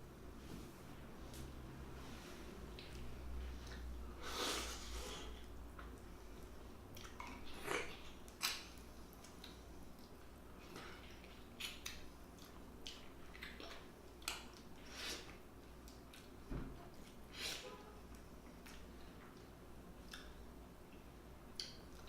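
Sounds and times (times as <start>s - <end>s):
low steady hum: 0.0s - 22.0s
wet chewing and mouth sounds: 5.3s - 17.3s, 18.1s - 22.0s.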